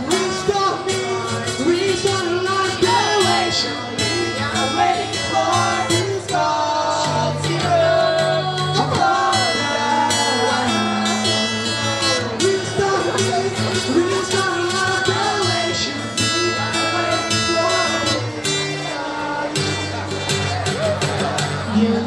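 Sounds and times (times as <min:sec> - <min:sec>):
person singing: 0:00.0 - 0:20.1
acoustic guitar strumming: 0:00.0 - 0:22.0.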